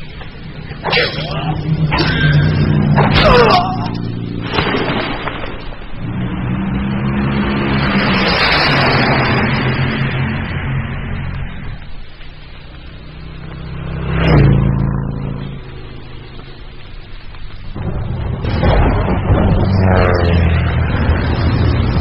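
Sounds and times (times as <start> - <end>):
vehicle engine rumbling: 0.0 - 22.0.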